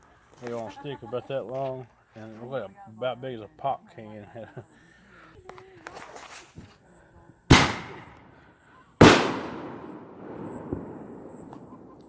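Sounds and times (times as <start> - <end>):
firework bangs with echo: 7.5 - 8.4, 9.0 - 12.0
small firework pop: 7.5 - 8.4, 9.0 - 12.0.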